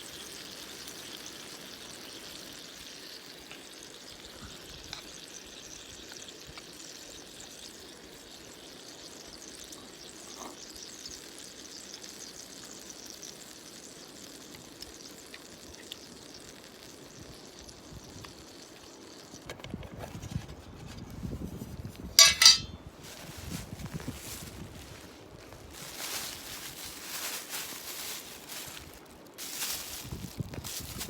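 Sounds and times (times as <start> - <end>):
food sizzling in a skillet: 0.0 - 19.4, 22.2 - 25.0, 25.7 - 31.0
pan or utensil knocks: 22.2 - 22.7.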